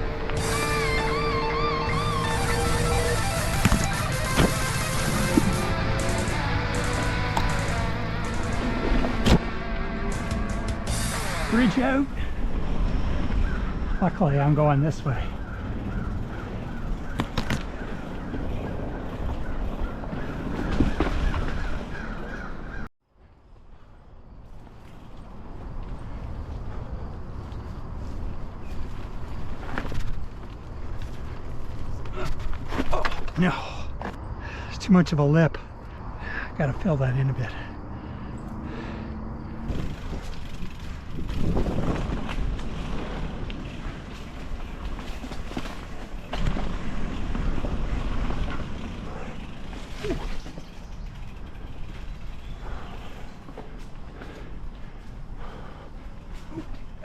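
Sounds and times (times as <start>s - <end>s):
crow calling: 0.0s - 8.5s, 13.2s - 22.9s
mountain bike riding noise: 0.0s - 57.0s
wind rumbling on microphone: 12.1s - 22.9s, 37.8s - 57.0s.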